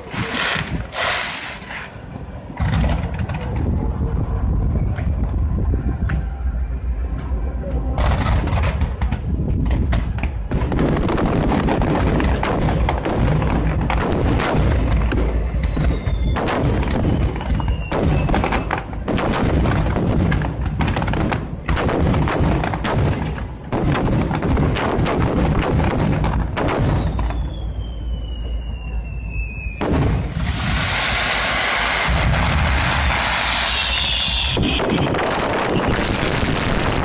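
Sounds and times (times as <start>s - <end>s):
falling firework whistles: 0.0s - 3.6s, 12.3s - 21.0s, 25.7s - 37.0s
fireworks bangs: 0.0s - 37.0s
deep rumble: 2.5s - 21.9s, 26.2s - 35.7s.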